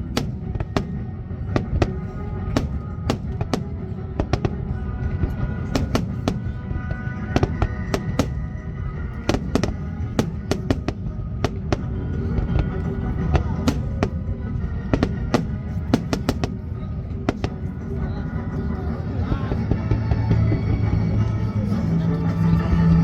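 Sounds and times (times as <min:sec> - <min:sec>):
fireworks bursting: 0:00.0 - 0:18.0
low continuous rumble: 0:00.0 - 0:23.0
music playing: 0:00.0 - 0:23.0.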